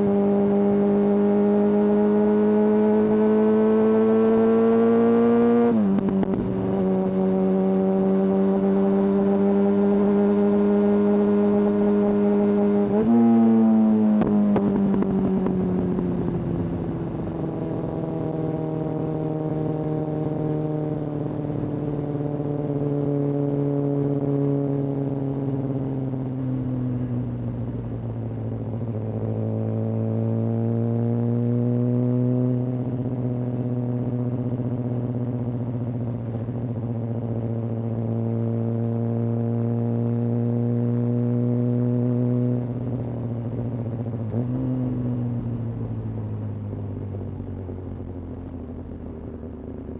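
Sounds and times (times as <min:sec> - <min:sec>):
motorcycle engine riding: 0:00.0 - 0:49.9.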